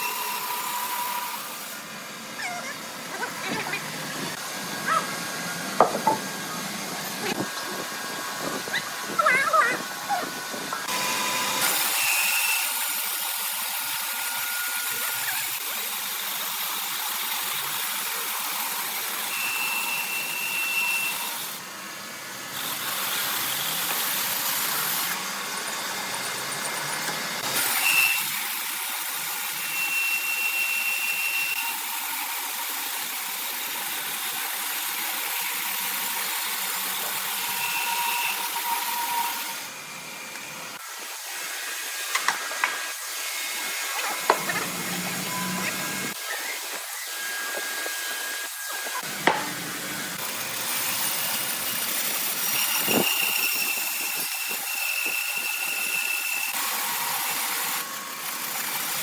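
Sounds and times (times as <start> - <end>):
saw cutting wood hissing: 0.0 - 59.0
short high whining tones: 42.7 - 49.1.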